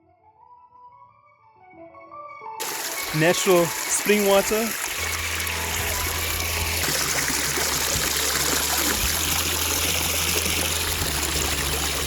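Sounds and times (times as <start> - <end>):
water trickling in shallow stream: 2.6 - 12.0.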